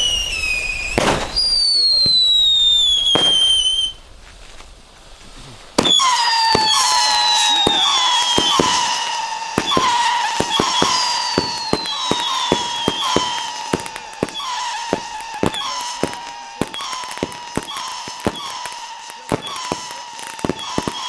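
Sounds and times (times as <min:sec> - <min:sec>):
screaming firework whistles: 0:00.0 - 0:04.1, 0:05.8 - 0:21.0
firework bangs: 0:00.0 - 0:21.0.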